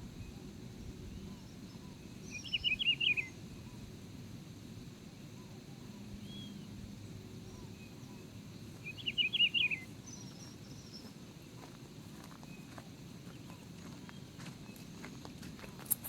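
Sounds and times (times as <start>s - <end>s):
steady low background noise: 0.0s - 16.0s
birds calling: 1.0s - 3.9s, 5.4s - 11.6s
bird rapid chirps: 1.7s - 3.3s, 8.8s - 11.1s.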